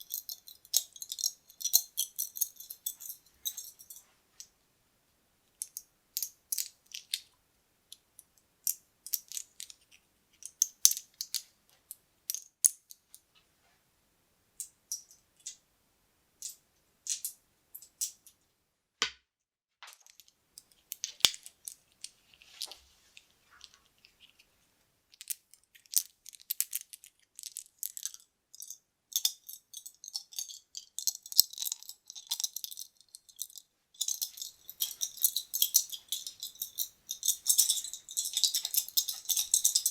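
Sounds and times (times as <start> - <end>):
buttons clicking and rattling: 34.0 - 39.9.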